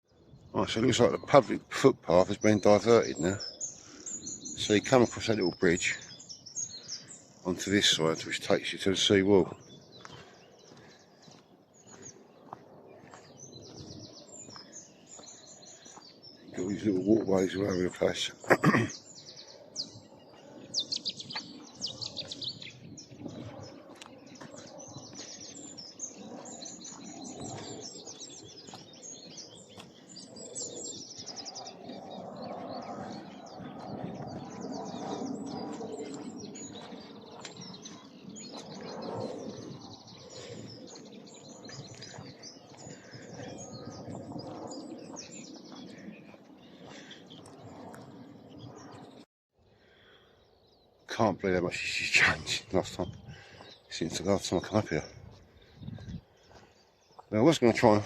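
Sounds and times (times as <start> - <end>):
songbirds chirping and trilling: 0.0 - 58.0.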